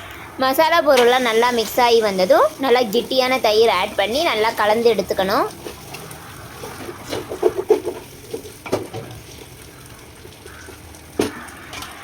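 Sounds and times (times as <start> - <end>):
faint sizzle: 0.0 - 12.0
spoon scraping and knocking pot: 5.6 - 9.2.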